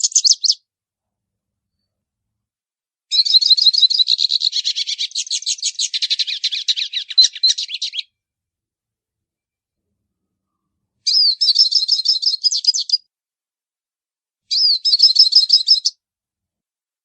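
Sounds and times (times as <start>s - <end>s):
bird twittering song: 0.0s - 0.6s, 3.1s - 8.2s, 11.0s - 13.0s, 14.5s - 16.0s.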